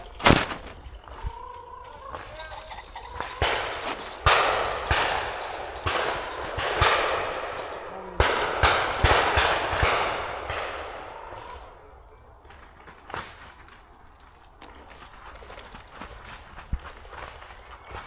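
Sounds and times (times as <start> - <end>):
shotguns firing with echo: 3.2 - 12.1.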